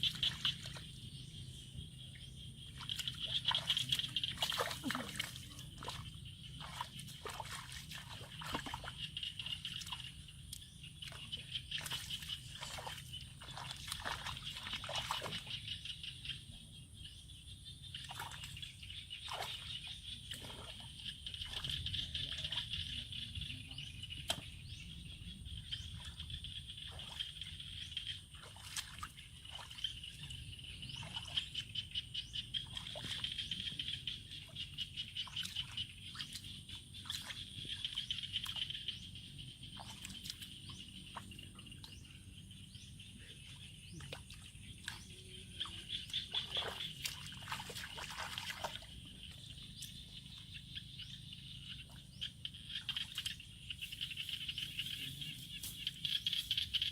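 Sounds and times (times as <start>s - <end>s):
water sloshing and splashing: 0.0s - 1.6s, 2.5s - 15.7s, 18.0s - 22.8s, 25.8s - 42.1s, 43.4s - 50.5s.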